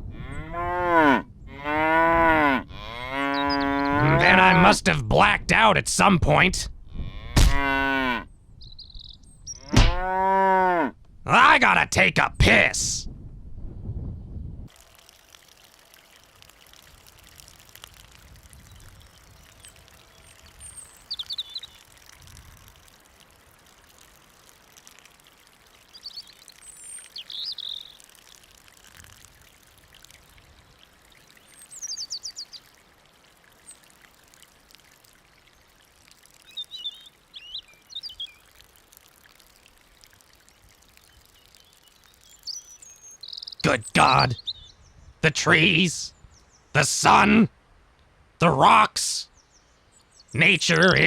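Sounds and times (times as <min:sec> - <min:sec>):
birds chirping: 0:02.8 - 0:10.2, 0:18.6 - 0:22.1, 0:25.6 - 0:28.6, 0:30.0 - 0:34.3, 0:36.4 - 0:38.8, 0:39.7 - 0:47.5, 0:48.4 - 0:51.0
person urinating: 0:14.7 - 0:43.2.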